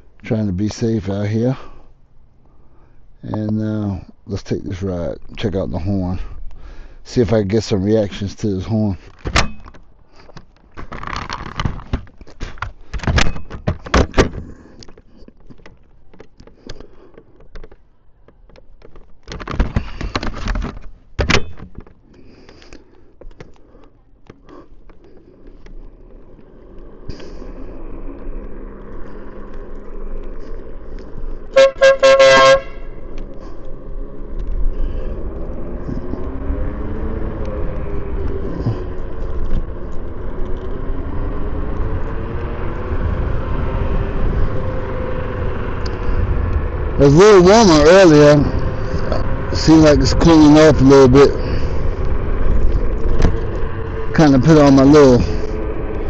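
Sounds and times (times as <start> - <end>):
wind and road noise rumble: 0.0 - 56.0
electric air horn toots: 31.5 - 33.0.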